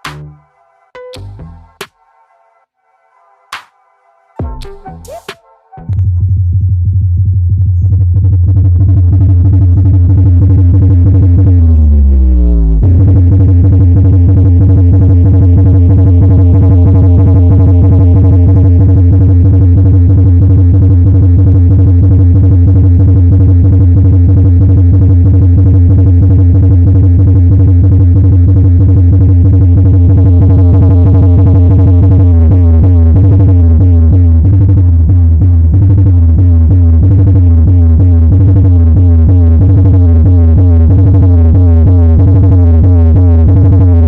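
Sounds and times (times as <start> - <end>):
electronic dance music with deep bass: 0.0 - 2.1, 4.4 - 6.0, 29.0 - 44.0.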